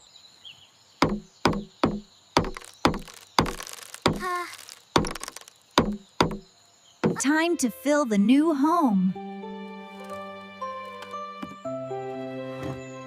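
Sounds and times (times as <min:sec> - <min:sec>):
hammer knocking on wood: 0:01.0 - 0:04.3, 0:05.0 - 0:07.2.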